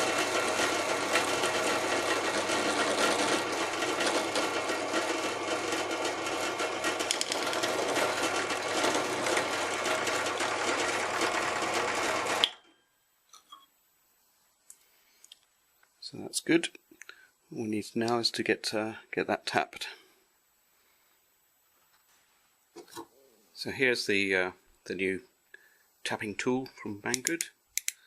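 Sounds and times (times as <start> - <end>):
electric drill drilling metal: 0.0 - 12.5.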